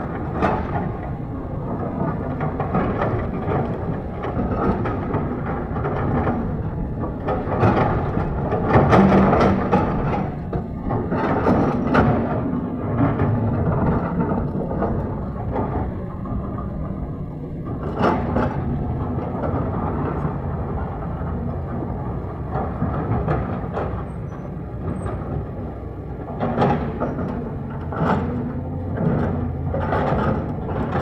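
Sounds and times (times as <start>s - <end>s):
diesel engine running: 0.0s - 31.0s.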